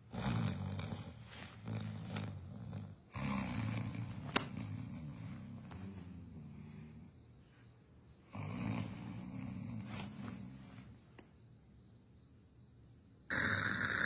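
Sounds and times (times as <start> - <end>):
loud rough snoring: 0.0 - 5.6, 8.3 - 10.6, 13.3 - 14.0.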